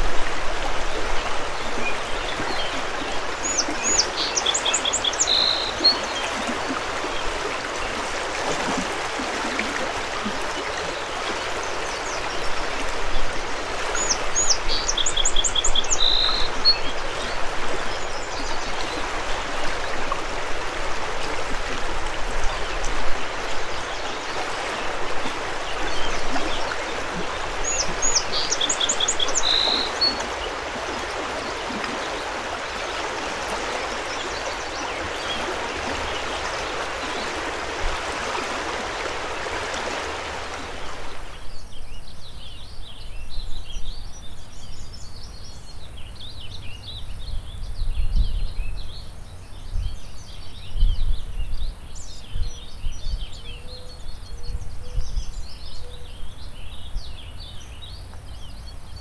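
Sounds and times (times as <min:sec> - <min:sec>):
mountain river rushing: 0:00.0 - 0:41.4.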